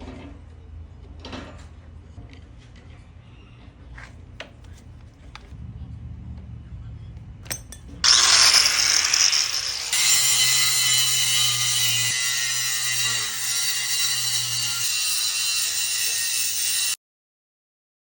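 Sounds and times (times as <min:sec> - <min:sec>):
grinder clicks: 0:07.5 - 0:15.6
power grinder grinding metal: 0:07.5 - 0:17.0.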